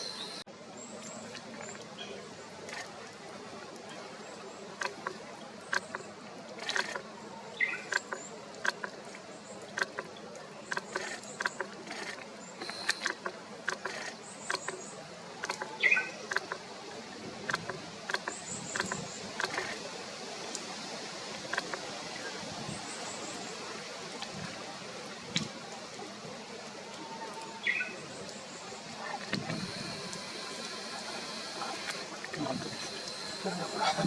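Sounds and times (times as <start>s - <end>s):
songbirds calling: 0.0s - 20.0s, 26.9s - 34.0s.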